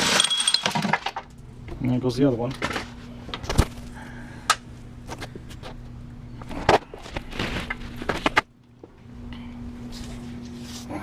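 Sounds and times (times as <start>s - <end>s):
metal tools clinking: 0.0s - 1.0s
steady low hum: 0.4s - 11.0s.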